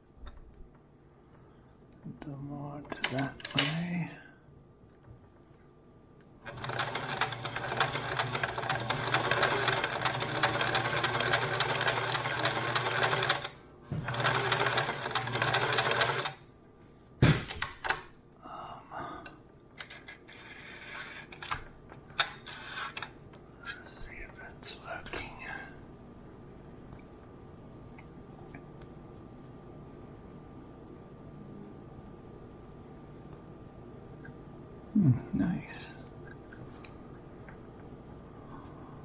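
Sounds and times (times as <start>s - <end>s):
sewing machine stitching: 6.4s - 16.4s.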